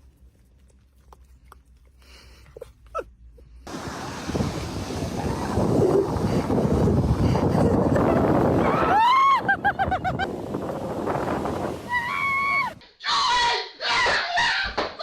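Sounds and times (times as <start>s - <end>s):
surf: 3.7s - 12.8s
wind buffeting microphone: 3.7s - 12.8s.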